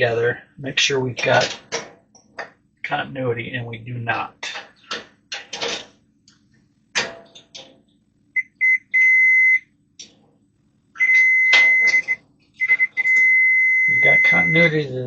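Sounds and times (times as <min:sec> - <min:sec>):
multimeter beeping: 0:08.4 - 0:09.6, 0:11.0 - 0:14.8.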